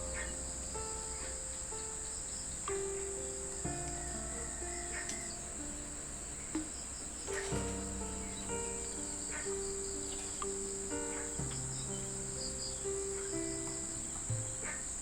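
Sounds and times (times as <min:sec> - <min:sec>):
insects chirring: 0:00.0 - 0:15.0
soft background music: 0:00.0 - 0:15.0.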